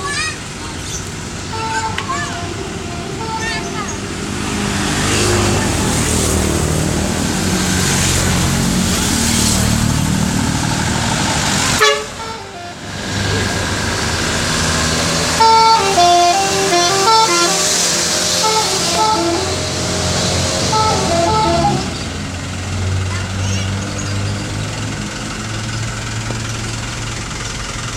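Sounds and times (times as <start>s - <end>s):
truck engine running: 0.0s - 27.9s
horn playing stepped notes: 11.8s - 12.9s, 15.3s - 22.0s.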